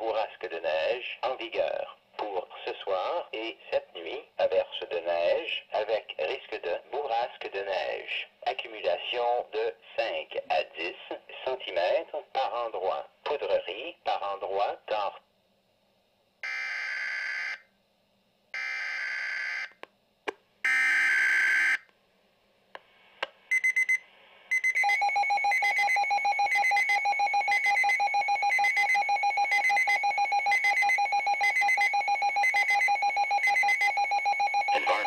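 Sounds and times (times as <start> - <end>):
rapid electronic alert beeps: 23.5 - 35.0.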